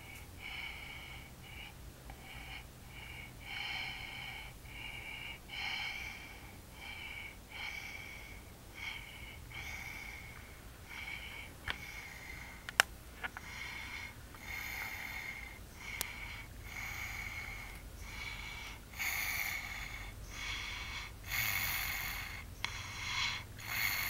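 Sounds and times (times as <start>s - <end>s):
baby snoring: 13.4s - 24.0s.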